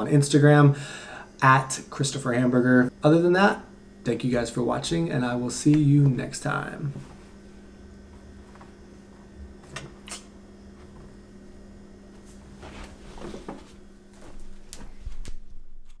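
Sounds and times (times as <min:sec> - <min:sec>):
steady low hum: 0:00.0 - 0:16.0
rustling handling noise: 0:05.6 - 0:10.0, 0:12.1 - 0:15.4.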